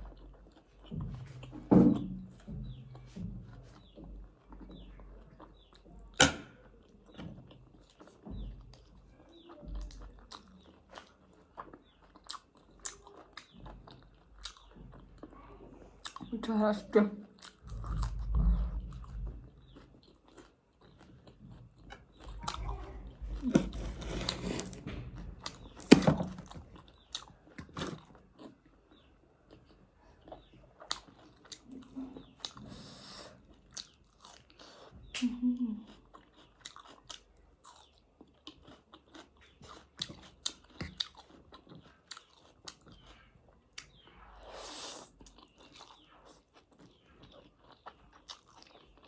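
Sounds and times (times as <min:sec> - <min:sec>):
close-up chewing and biting: 0:00.0 - 0:15.4, 0:17.3 - 0:35.2, 0:35.9 - 0:49.0
food crunches: 0:35.9 - 0:44.0, 0:44.6 - 0:49.0.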